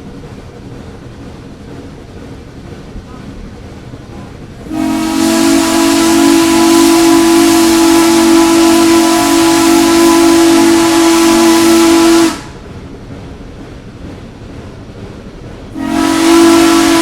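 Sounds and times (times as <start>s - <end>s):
low rumble of moving train: 0.0s - 17.0s
steam locomotive whistle: 4.7s - 12.6s, 15.8s - 17.0s.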